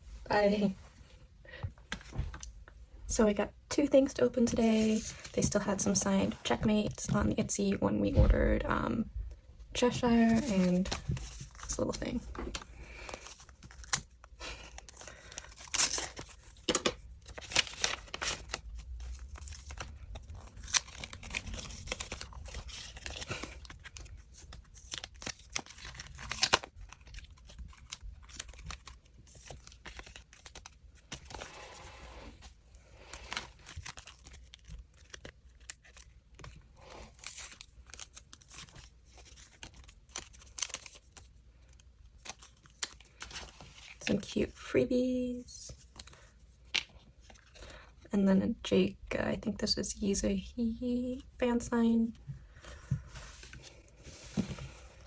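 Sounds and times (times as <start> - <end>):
packaging tearing and crinkling: 12.5 - 32.0, 33.0 - 43.9.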